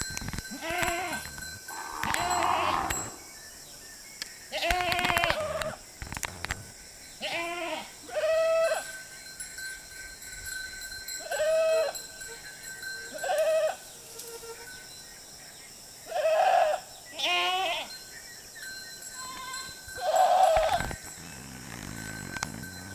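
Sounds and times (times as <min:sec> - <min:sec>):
goats bleating: 0:00.5 - 0:03.0, 0:19.2 - 0:22.9.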